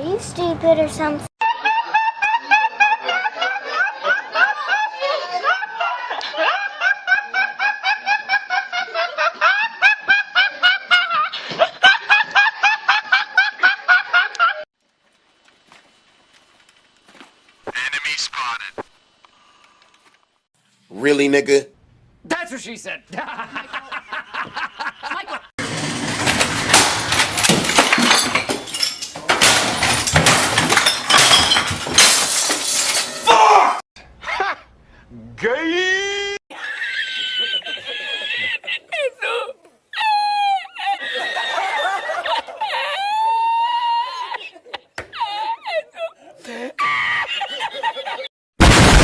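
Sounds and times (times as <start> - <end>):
high-pitched cackling laughter: 1.4 - 14.6, 36.5 - 48.3
glass breaking and objects clattering: 25.7 - 33.5.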